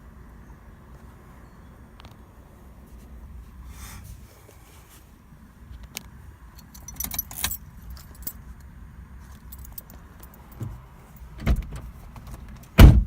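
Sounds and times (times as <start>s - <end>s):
keys jangling: 6.6s - 8.4s, 9.3s - 11.3s.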